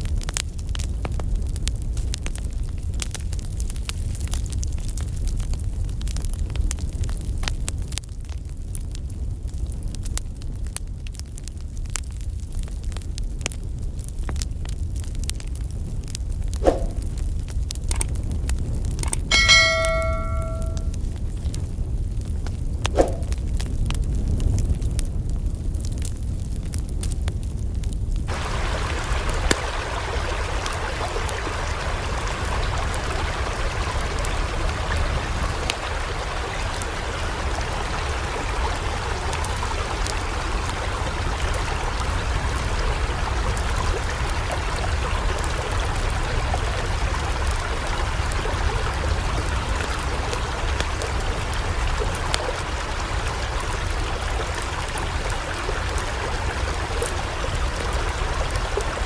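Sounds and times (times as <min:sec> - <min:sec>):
floodwater rushing: 0:28.3 - 0:59.0.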